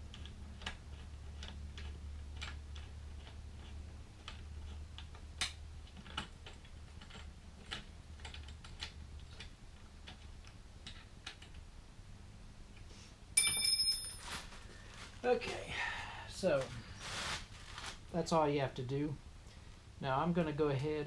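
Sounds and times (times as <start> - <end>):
ringing metallic clink: 13.4 - 14.4.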